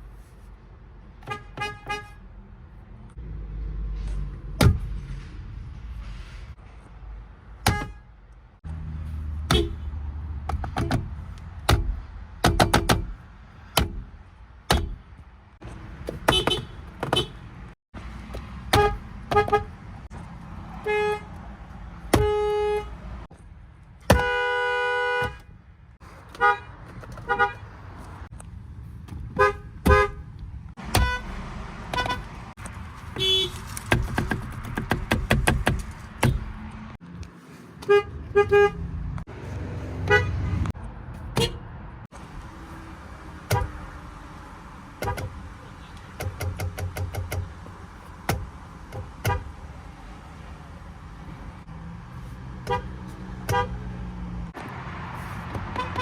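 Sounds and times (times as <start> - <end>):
car horns honking: 1.2 - 2.3, 7.6 - 8.2, 9.4 - 10.0, 16.0 - 17.7, 18.6 - 20.0, 20.7 - 23.3, 24.0 - 25.6, 26.3 - 27.8, 29.3 - 32.5, 33.1 - 33.7, 37.8 - 39.0, 39.9 - 40.7, 41.3 - 41.8, 43.4 - 43.8, 44.9 - 46.6, 49.0 - 49.6, 52.6 - 53.9, 55.6 - 56.0.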